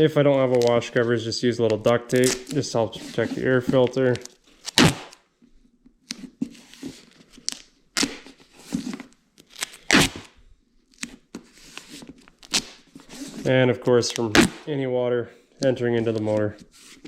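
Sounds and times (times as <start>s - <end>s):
duct tape ripping: 1.7s - 2.6s, 4.1s - 5.2s, 7.3s - 8.4s, 9.4s - 12.9s, 14.1s - 14.7s.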